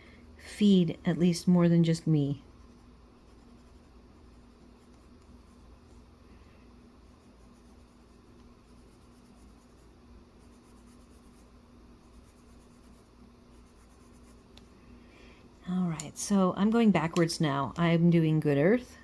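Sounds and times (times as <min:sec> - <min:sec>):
steady low hum: 0:00.0 - 0:19.0
pencil scratching on paper: 0:02.4 - 0:06.1, 0:07.0 - 0:14.5.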